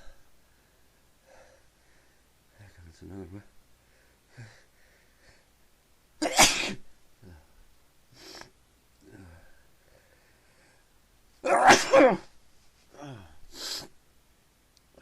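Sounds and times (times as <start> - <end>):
quiet breaths: 0.0 - 6.0, 7.2 - 11.4, 12.4 - 14.0
man sneezing: 6.2 - 6.8, 11.4 - 12.3.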